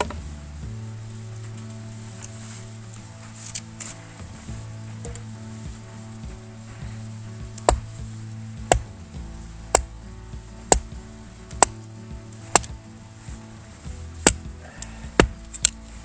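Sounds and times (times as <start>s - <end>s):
background music: 0.0s - 16.0s
axe chopping firewood: 3.4s - 16.0s.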